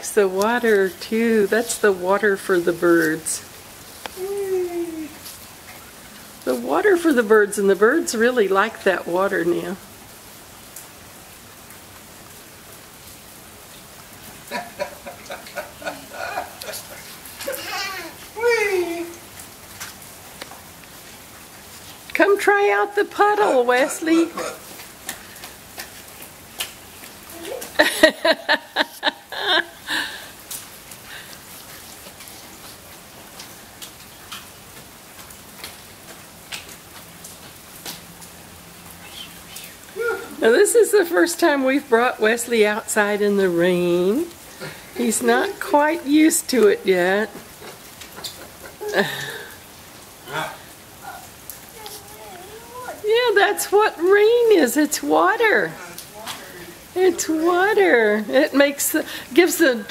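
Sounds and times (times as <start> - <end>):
steady rain falling: 0.0 - 59.9
single raindrop ticks: 10.7 - 11.0, 19.1 - 22.2, 24.8 - 27.8, 32.0 - 38.4
high voice-like sounds: 17.5 - 19.3, 39.9 - 40.4, 50.3 - 53.1.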